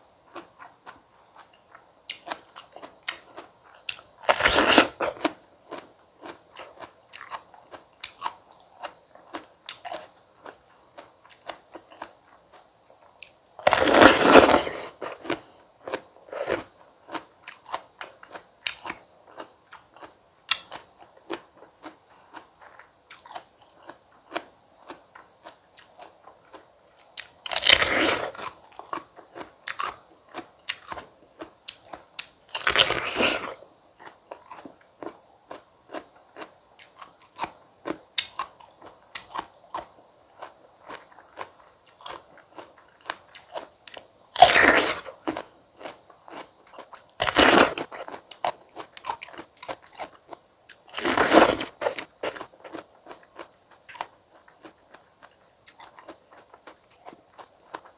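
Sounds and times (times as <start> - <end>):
crunchy fruit bites: 0.3 - 12.6, 13.2 - 57.9.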